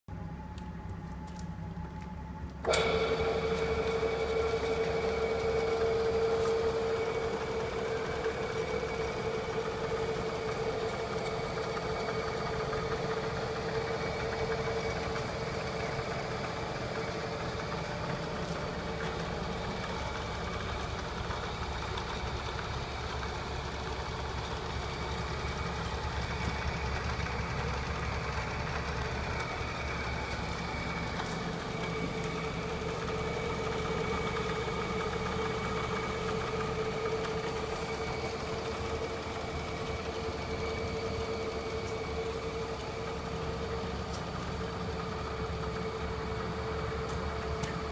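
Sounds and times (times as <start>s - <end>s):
brake lathe motor whining: 0.1s - 47.9s.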